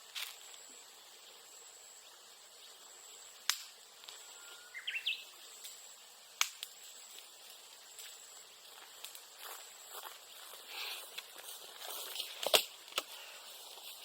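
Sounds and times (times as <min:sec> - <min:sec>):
high insect tone: 0:00.0 - 0:14.0
bamboo cracking in a fire: 0:03.3 - 0:04.3, 0:05.6 - 0:09.5, 0:11.0 - 0:14.0
bird singing: 0:04.1 - 0:05.9.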